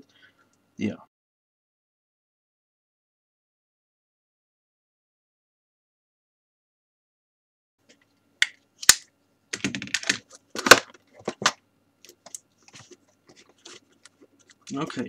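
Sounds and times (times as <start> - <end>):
packaging clicks and knocks: 9.6 - 11.6.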